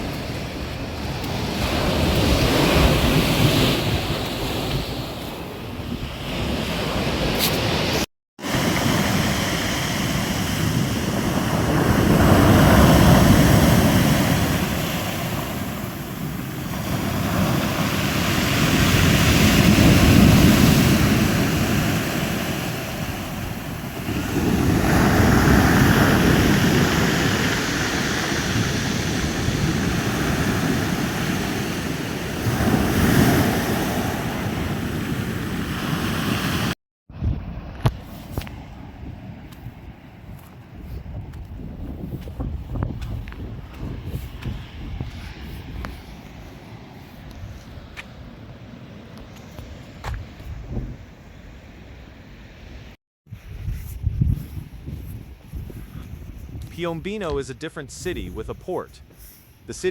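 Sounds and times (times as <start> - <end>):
sea waves washing onto shore: 0.0 - 36.8
wind buffeting microphone: 37.1 - 46.6, 50.0 - 51.1, 53.3 - 56.8.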